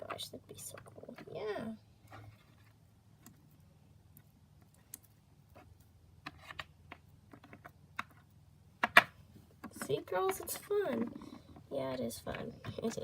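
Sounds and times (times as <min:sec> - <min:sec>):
low steady hum: 0:00.0 - 0:13.0
small objects clicking and tapping: 0:04.1 - 0:13.0.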